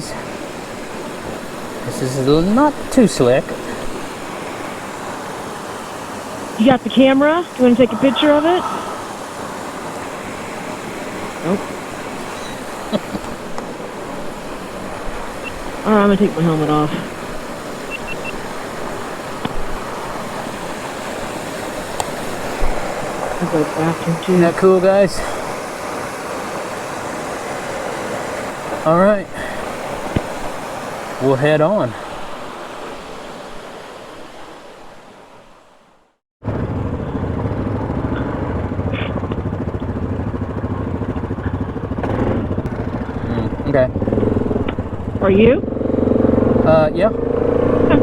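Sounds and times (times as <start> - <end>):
atv engine running: 0.0 - 31.5, 36.4 - 48.0
waterfall rushing: 0.0 - 35.8
short high beeps: 17.9 - 18.4.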